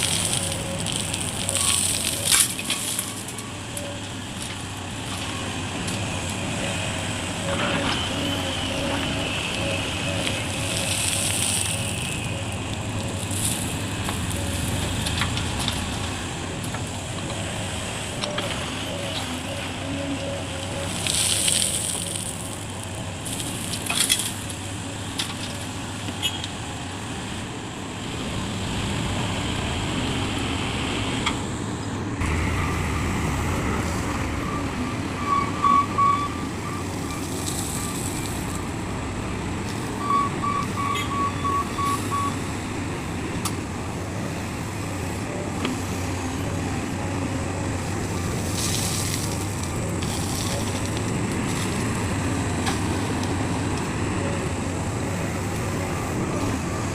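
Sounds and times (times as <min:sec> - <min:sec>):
heavy machinery diesel engines: 0:00.0 - 0:56.9
rapid high warning beeps: 0:34.2 - 0:38.2, 0:39.9 - 0:42.4.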